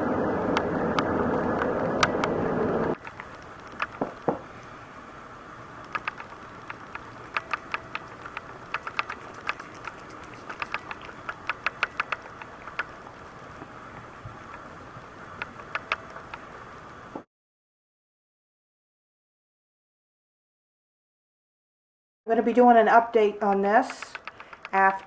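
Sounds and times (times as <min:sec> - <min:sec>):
loud steady rushing noise: 0:00.0 - 0:04.4
camera clicking and tapping: 0:03.0 - 0:04.4, 0:05.9 - 0:13.6, 0:15.4 - 0:16.5, 0:23.9 - 0:25.0.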